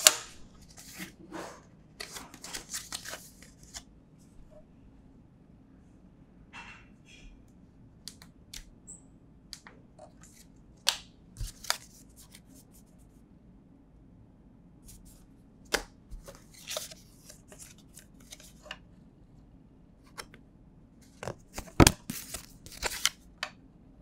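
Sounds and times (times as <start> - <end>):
cardboard and plastic rustling: 0.0 - 3.8.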